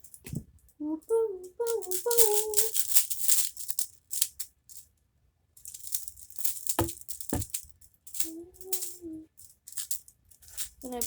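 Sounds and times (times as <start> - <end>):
person humming: 0.8 - 2.8, 8.2 - 9.3
plastic slinky rattling and swishing: 1.7 - 4.5.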